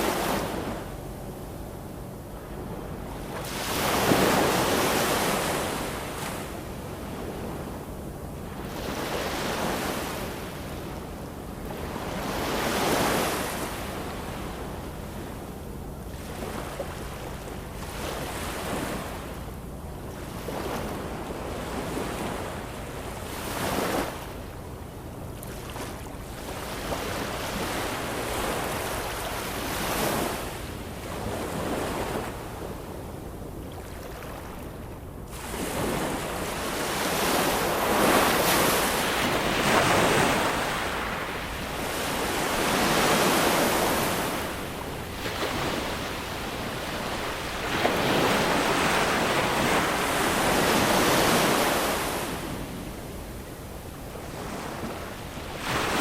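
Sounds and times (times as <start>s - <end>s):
ocean waves breaking: 0.0s - 1.4s, 2.4s - 7.8s, 8.4s - 15.4s, 16.1s - 19.4s, 33.6s - 56.0s.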